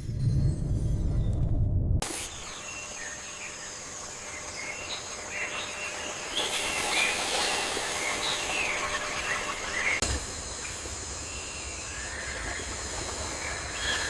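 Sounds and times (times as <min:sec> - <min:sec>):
high-pitched hum and hiss: 0:02.0 - 0:14.0
birds chirping and whistling: 0:02.2 - 0:10.0.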